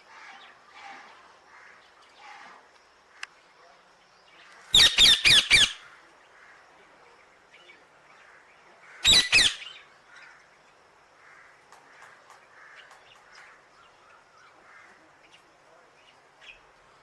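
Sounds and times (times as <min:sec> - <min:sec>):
parrot screeching: 0:04.8 - 0:05.8, 0:09.0 - 0:09.8.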